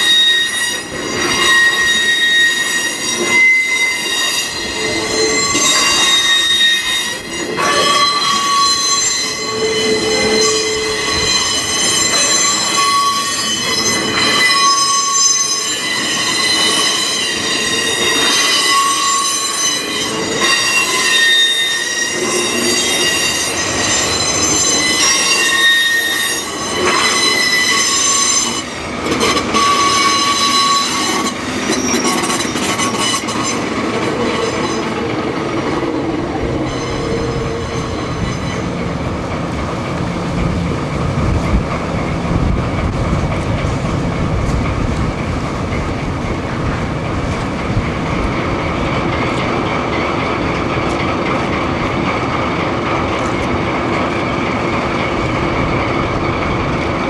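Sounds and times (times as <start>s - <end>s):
rumble of moving train: 0.0s - 57.0s
train wheels squealing on rails: 0.0s - 57.0s.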